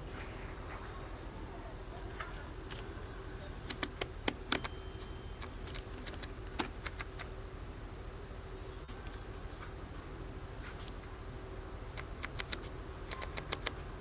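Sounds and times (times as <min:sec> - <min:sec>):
steady low hum: 0:00.0 - 0:14.0
sharp clicks: 0:03.7 - 0:04.8, 0:05.4 - 0:07.3, 0:11.9 - 0:13.9.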